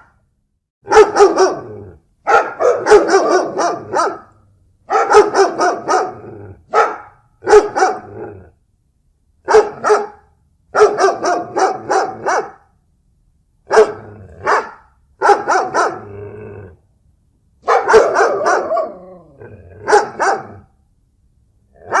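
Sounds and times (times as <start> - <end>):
dog barking in bursts: 0.8 - 8.4, 9.4 - 12.8, 13.6 - 16.2, 17.6 - 20.8, 21.8 - 22.0.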